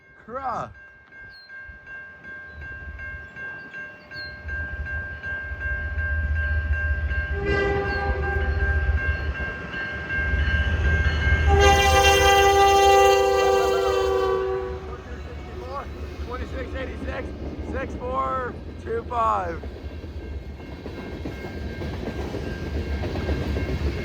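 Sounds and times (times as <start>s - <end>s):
locomotive horn chord: 7.2s - 9.1s, 11.2s - 15.8s.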